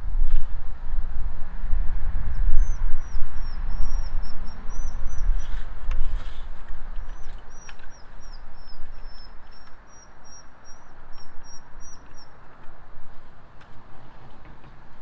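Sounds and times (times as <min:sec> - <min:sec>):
low hum and hiss: 0:00.0 - 0:15.0
bird chirping: 0:02.3 - 0:12.8.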